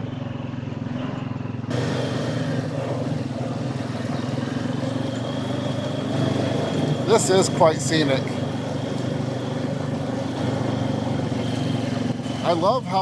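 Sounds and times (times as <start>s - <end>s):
atv engine running: 0.0s - 13.0s.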